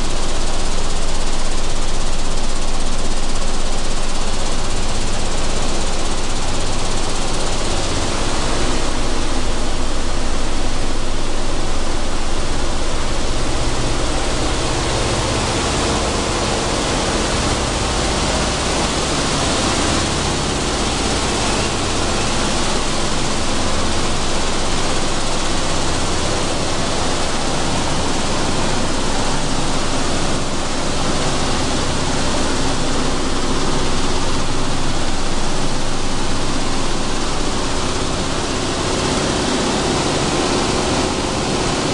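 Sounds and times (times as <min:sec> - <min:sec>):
hulling machine rushing noise: 0:01.6 - 0:41.9.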